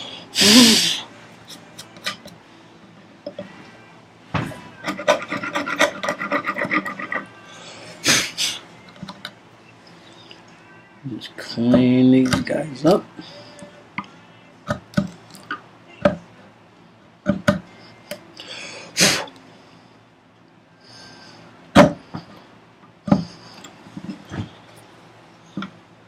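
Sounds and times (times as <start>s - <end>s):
chisel scraping cut: 4.8s - 7.3s.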